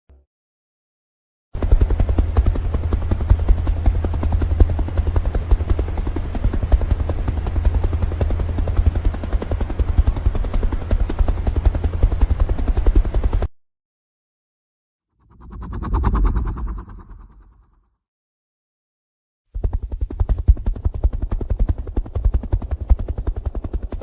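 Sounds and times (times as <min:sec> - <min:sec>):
helicopter engine rumble: 0:01.6 - 0:13.5, 0:15.2 - 0:17.6, 0:19.7 - 0:24.0
helicopter rotor blades beating: 0:01.6 - 0:13.5, 0:15.2 - 0:17.8, 0:19.5 - 0:24.0.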